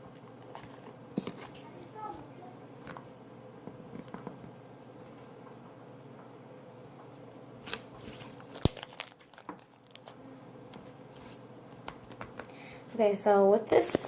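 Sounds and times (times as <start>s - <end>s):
plastic containers clicking and crinkling: 7.7s - 10.8s.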